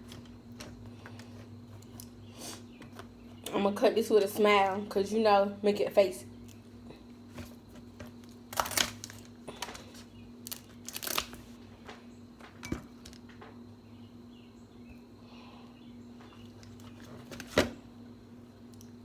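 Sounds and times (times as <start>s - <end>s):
faint steady hum: 0.0s - 19.0s
food wrapping crinkling: 7.3s - 13.3s.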